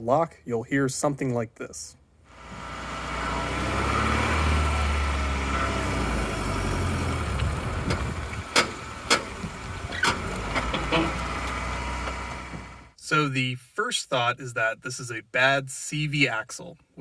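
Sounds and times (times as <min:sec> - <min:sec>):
groaning suspension rubbing noise: 0:02.4 - 0:12.9
sharp suspension pops: 0:07.2 - 0:12.9.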